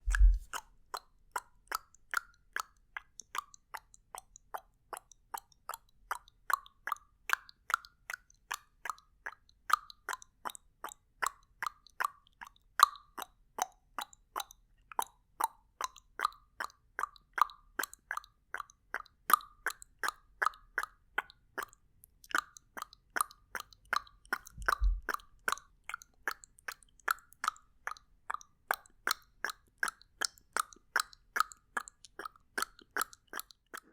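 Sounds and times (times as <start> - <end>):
tongue clicks: 0.0 - 33.9
low thump: 0.1 - 0.4, 24.6 - 25.1.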